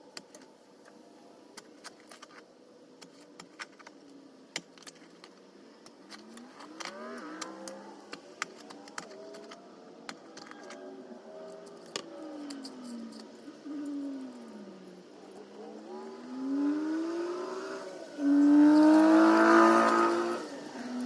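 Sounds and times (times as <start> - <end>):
passing vehicle engine hum: 12.7 - 21.0.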